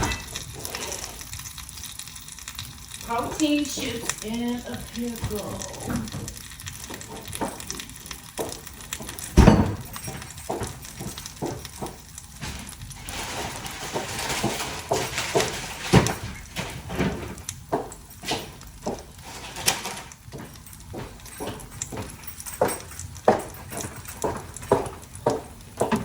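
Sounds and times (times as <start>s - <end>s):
dishes and utensils clinking: 0.0s - 1.2s, 3.1s - 18.6s, 19.3s - 26.0s
heavy thump: 9.4s - 9.9s.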